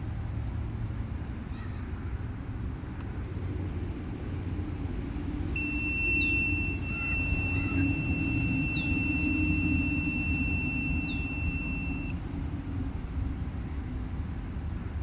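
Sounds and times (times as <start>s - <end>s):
multimeter continuity beep: 5.6s - 12.1s.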